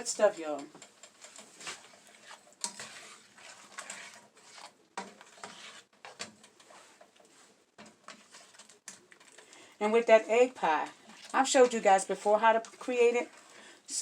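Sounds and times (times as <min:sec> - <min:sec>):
sauce bubbling in a pan: 0:00.7 - 0:09.8.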